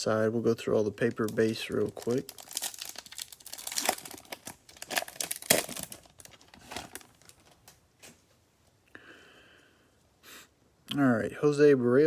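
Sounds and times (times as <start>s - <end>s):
wrappers crinkling and tearing: 1.0s - 7.8s.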